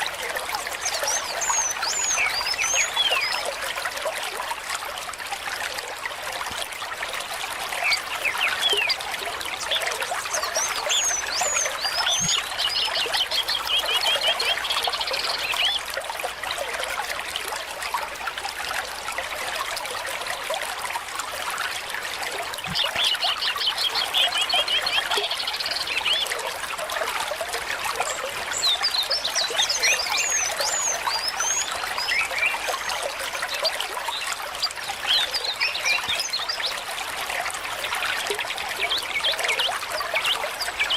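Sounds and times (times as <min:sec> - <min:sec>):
water trickling: 0:00.0 - 0:40.9
small birds chirping: 0:00.7 - 0:03.5, 0:07.8 - 0:15.8.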